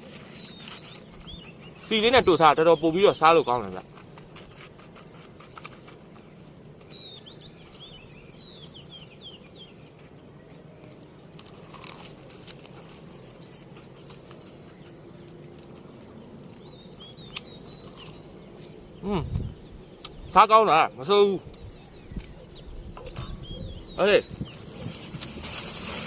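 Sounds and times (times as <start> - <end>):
small bird chirping: 0.1 - 3.8, 4.5 - 25.6
crunching of crisp snack chewing: 15.4 - 18.2.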